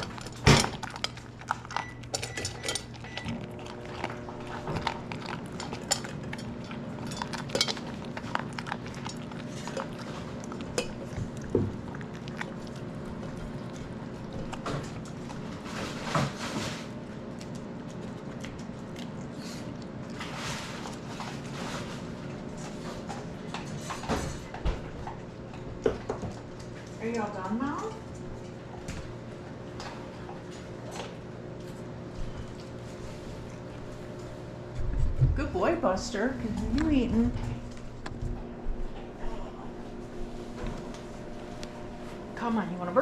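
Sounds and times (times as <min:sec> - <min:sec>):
food bowl clinking: 0:00.0 - 0:09.9
dog chewing: 0:00.0 - 0:35.2, 0:36.2 - 0:42.2
steady low hum: 0:00.0 - 0:43.0.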